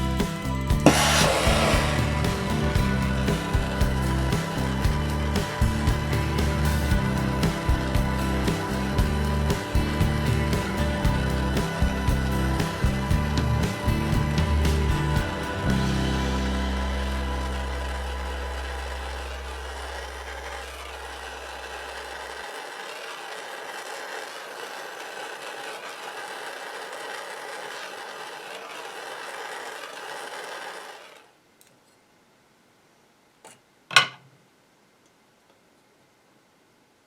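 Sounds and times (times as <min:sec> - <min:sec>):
soldering torch flame hissing: 0:00.9 - 0:02.7.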